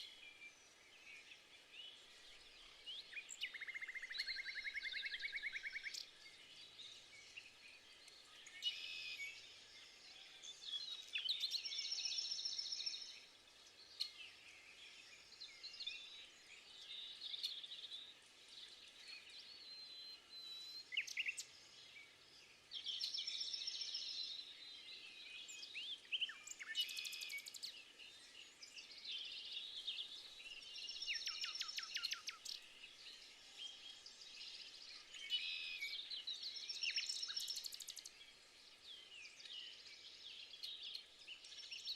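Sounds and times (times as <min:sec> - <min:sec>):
faint outdoor background: 0:00.0 - 0:41.9
songbirds singing and chirping: 0:00.0 - 0:41.9.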